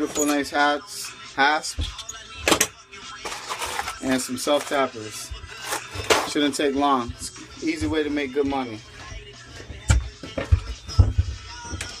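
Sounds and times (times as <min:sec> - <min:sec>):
background music with drum beat: 0:04.9 - 0:12.0.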